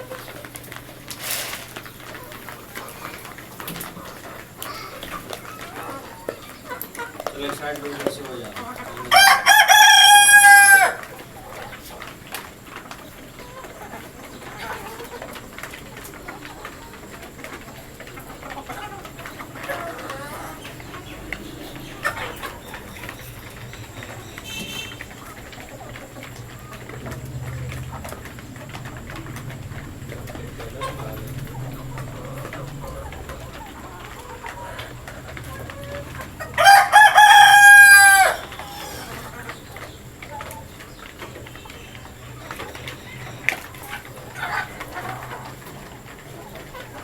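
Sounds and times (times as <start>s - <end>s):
chickens clucking: 0.0s - 47.0s
rooster crowing: 9.1s - 11.1s, 35.9s - 39.4s.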